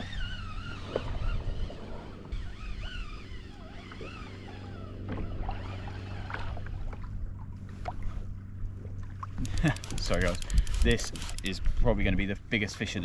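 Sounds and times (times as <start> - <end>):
fishing reel drag whining: 0.0 - 6.9, 9.4 - 11.6.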